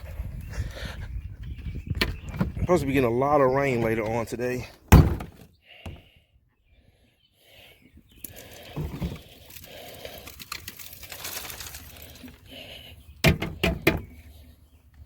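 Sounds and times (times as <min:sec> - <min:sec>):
debris rustling as it pours: 0:08.4 - 0:12.4.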